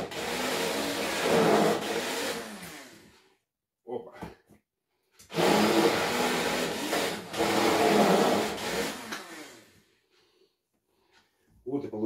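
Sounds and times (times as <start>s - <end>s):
immersion blender running: 0.0s - 3.2s, 5.3s - 9.8s.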